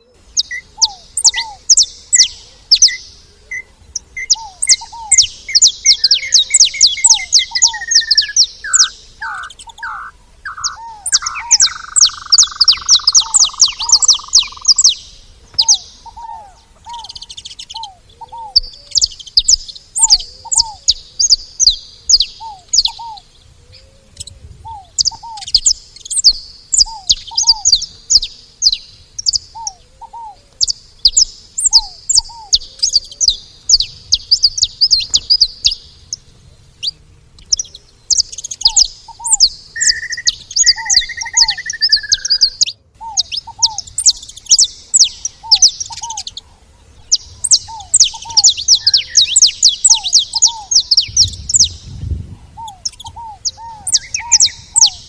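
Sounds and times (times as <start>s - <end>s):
finch chirping: 0.0s - 55.0s
lower paired bird call: 0.0s - 55.0s
drawn-out whistle: 39.8s - 42.6s.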